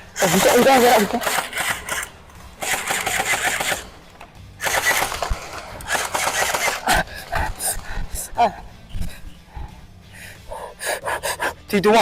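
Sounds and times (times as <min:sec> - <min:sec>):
video game gunfire bursts: 0:00.2 - 0:04.0, 0:04.6 - 0:07.1.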